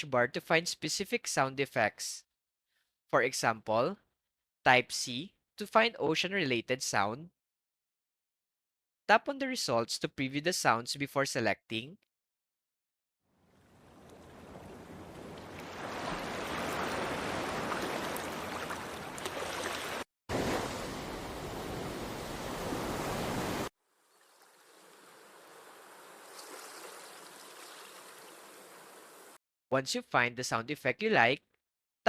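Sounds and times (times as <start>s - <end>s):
surf rushing: 14.3s - 23.7s.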